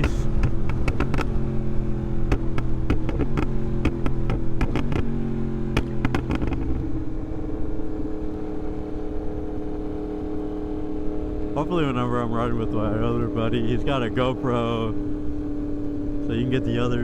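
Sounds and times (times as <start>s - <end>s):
exhaust pops and crackles: 0.0s - 7.2s
motorcycle engine running: 0.0s - 17.0s.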